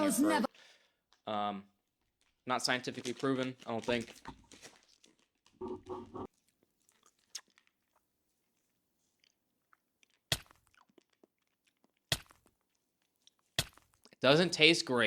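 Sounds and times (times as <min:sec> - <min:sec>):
candy clicking against teeth: 0:10.0 - 0:12.7.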